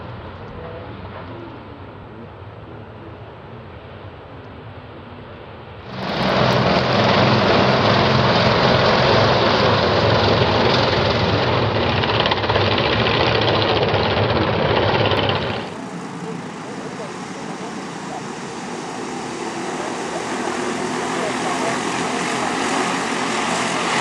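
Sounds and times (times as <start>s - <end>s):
kart engine running: 5.9s - 16.4s.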